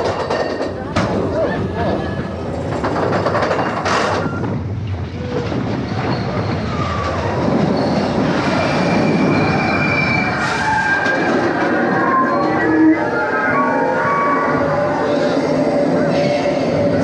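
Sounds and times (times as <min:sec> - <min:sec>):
train wheels rumbling and clattering: 0:00.0 - 0:17.0
wheel squeals: 0:05.7 - 0:17.0.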